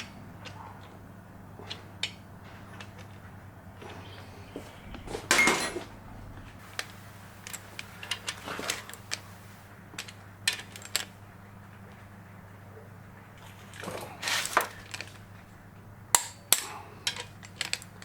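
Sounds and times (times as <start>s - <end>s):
steady low hum: 0.0s - 18.0s
metal tools clinking: 4.0s - 6.4s.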